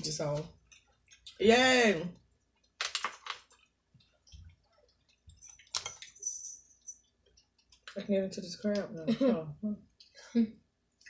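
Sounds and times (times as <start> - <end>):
wet chewing: 0.5 - 1.4, 2.2 - 6.2, 7.0 - 8.0.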